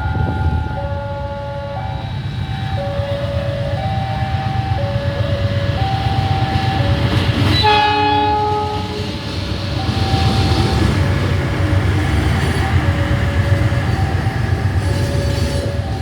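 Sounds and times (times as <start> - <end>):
train rumbling past: 0.0 - 16.0
train horn blast: 7.4 - 9.1.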